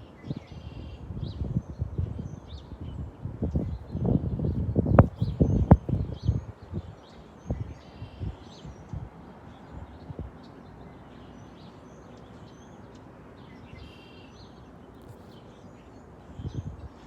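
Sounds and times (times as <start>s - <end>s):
songbirds chirping and calling: 0.0s - 17.0s
steady background noise: 4.7s - 17.0s.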